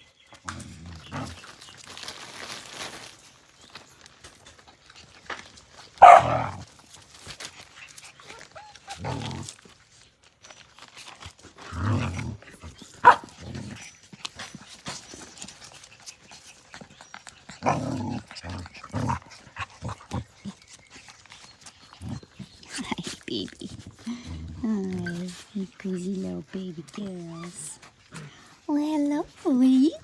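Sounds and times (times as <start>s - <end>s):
puppies yapping while playing: 4.0s - 11.5s, 12.3s - 24.4s.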